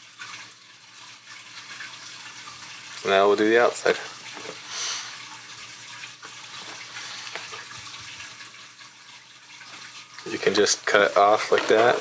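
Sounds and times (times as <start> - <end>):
steady hiss: 3.8 - 5.3.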